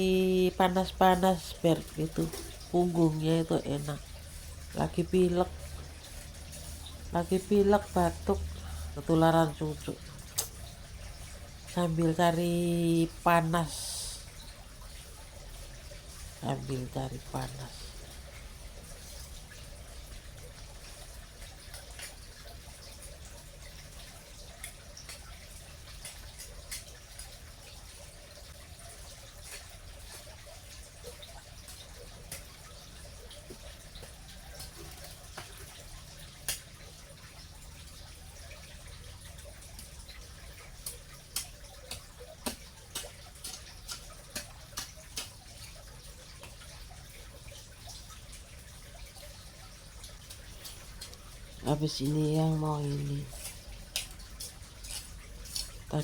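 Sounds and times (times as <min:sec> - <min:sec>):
low steady rumble: 0:00.0 - 0:26.4.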